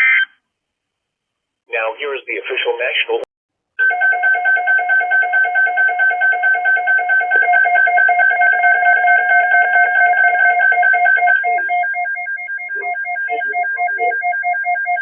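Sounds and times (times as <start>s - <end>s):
pulsing electronic alert tone: 7.2s - 15.0s
short electronic beeps: 9.3s - 15.0s.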